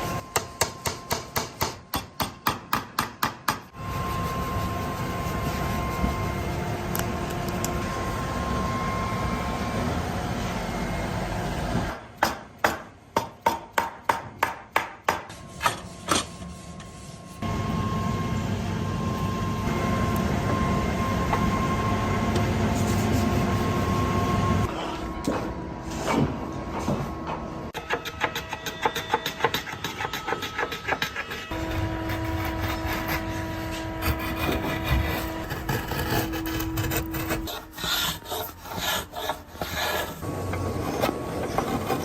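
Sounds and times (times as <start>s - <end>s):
sawmill machinery noise: 27.7s - 42.0s.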